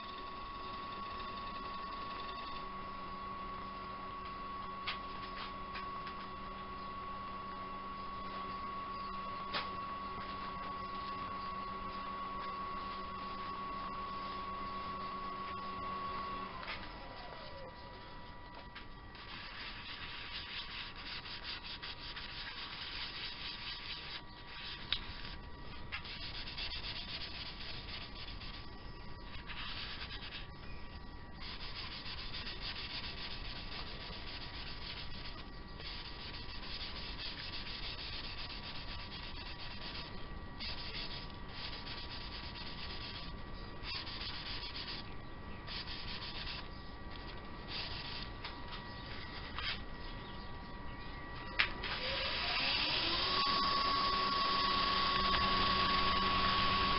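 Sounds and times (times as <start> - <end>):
thin steady whine: 0.0 - 56.9
abrasive rubbing on spinning wood: 19.1 - 30.7, 31.4 - 49.8.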